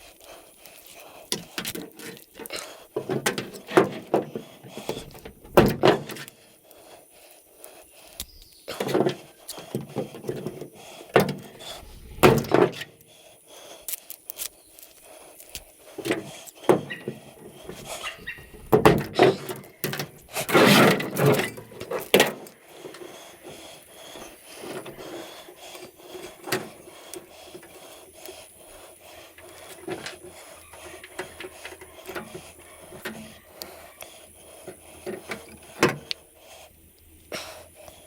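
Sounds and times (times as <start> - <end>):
light clicks taps and scraping: 0.2 - 6.8, 7.6 - 13.1, 13.8 - 28.4, 29.2 - 36.3
scrap clattering rattle: 16.1 - 23.0.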